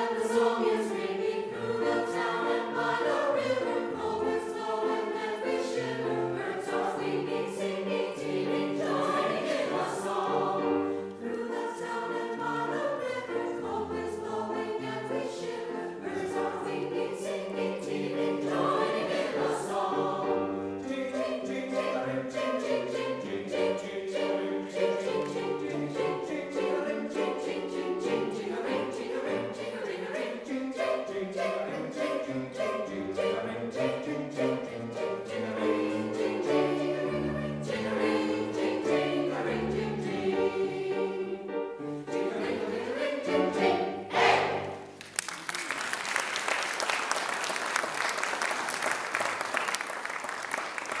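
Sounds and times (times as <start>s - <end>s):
choir singing: 0.0s - 45.0s
audience applause: 44.9s - 51.0s.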